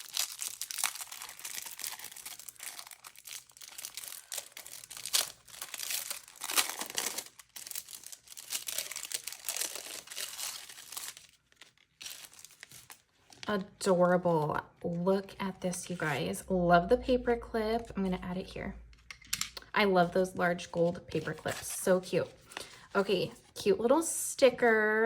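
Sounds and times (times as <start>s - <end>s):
tissue paper crinkling and rustling: 0.0s - 13.6s.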